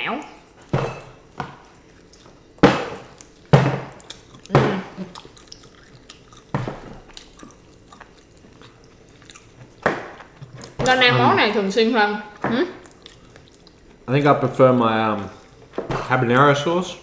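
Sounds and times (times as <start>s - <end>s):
crunching bites of fried chicken: 1.8s - 10.6s.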